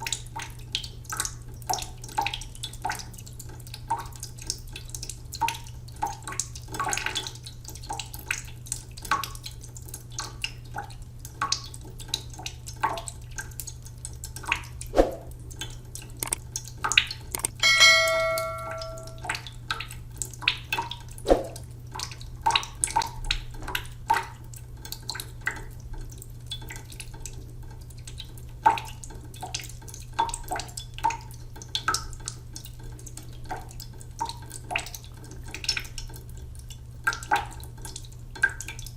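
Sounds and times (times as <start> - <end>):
water dripping and splashing: 0.0 - 38.9
low steady hum: 10.9 - 30.0
bell-like ring: 17.6 - 19.3.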